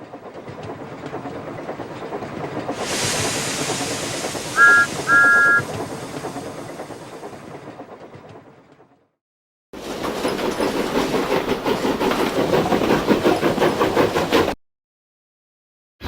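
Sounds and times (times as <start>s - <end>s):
steam locomotive clatter: 0.0s - 9.1s, 9.8s - 14.6s
loud steam hiss: 2.8s - 6.4s
two-note train whistle blasts: 4.6s - 5.7s.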